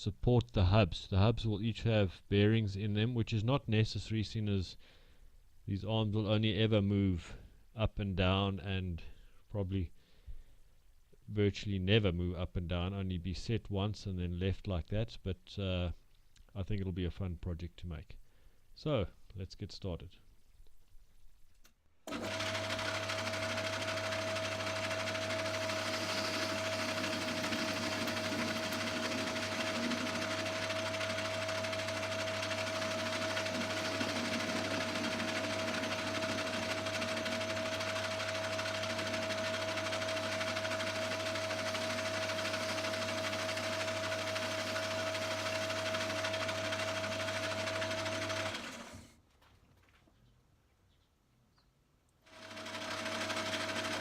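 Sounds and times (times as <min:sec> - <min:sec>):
electric motor whining: 0:22.1 - 0:47.0.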